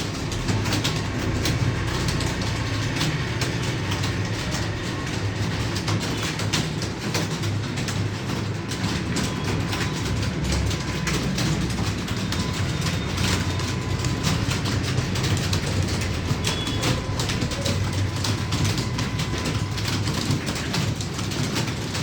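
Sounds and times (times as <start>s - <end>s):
keyboards typing: 0.0s - 22.0s.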